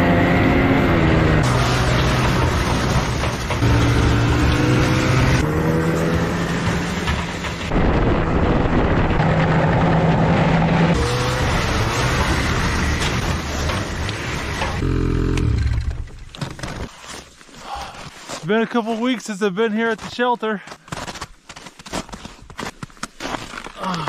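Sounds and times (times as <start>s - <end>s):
vehicle engine running loudly: 0.0s - 15.9s.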